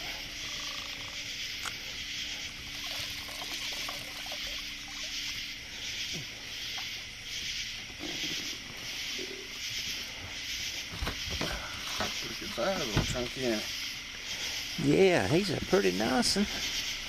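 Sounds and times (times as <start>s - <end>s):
night insects chorus: 0.0s - 17.0s
steady low hum: 0.0s - 17.0s
knocks and rustles: 10.8s - 12.2s, 12.8s - 13.3s.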